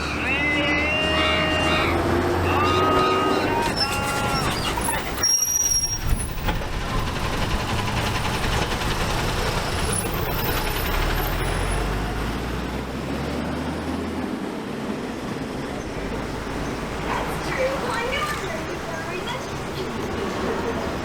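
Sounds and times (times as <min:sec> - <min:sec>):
low engine hum: 0:00.0 - 0:05.2
road traffic noise: 0:00.0 - 0:21.0.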